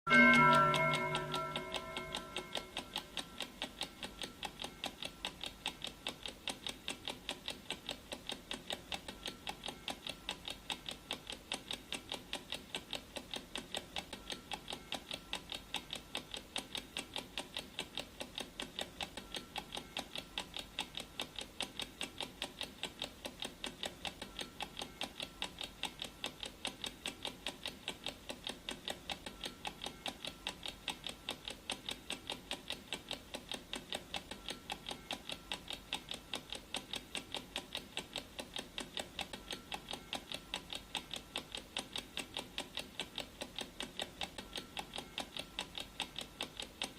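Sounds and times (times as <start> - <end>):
clock ticking: 0.1 - 46.9.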